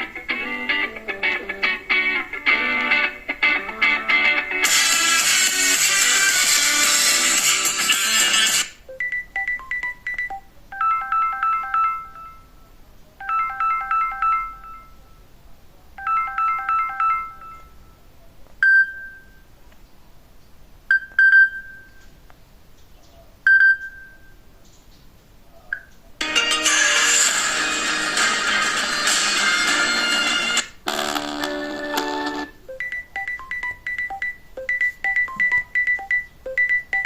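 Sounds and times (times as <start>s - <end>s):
electronic trill pattern: 4.6s - 8.8s
electronic ringtone notes: 4.6s - 12.6s, 13.2s - 15.2s, 16.0s - 17.9s, 26.2s - 37.0s.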